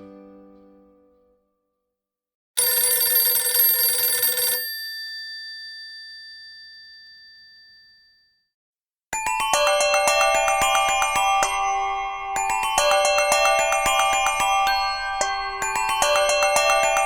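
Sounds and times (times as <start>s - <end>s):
metallic bell-like ringtone: 3.5s - 8.5s, 9.2s - 17.0s
high ringtone tones: 9.3s - 17.0s.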